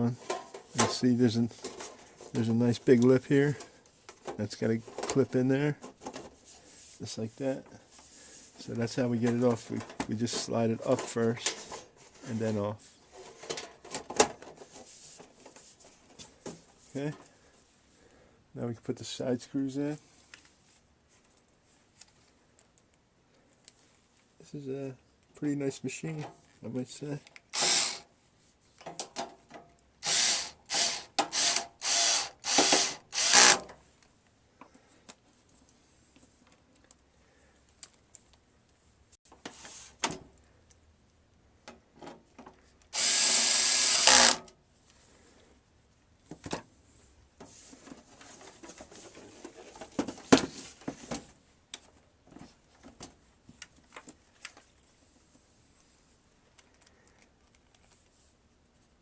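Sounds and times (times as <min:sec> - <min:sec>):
power screwdriver whirring: 0:27.5 - 0:28.0, 0:30.0 - 0:33.7, 0:43.0 - 0:44.4.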